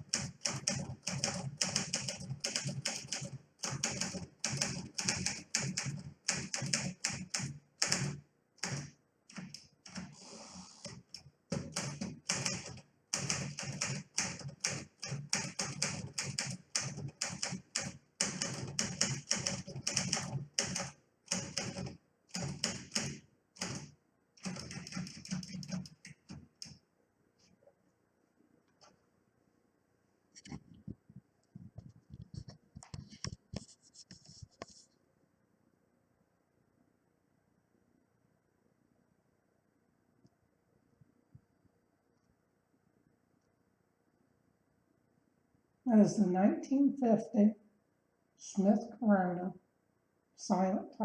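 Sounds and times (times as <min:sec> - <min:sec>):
typewriter keystrokes: 0:00.0 - 0:10.2, 0:10.8 - 0:26.7.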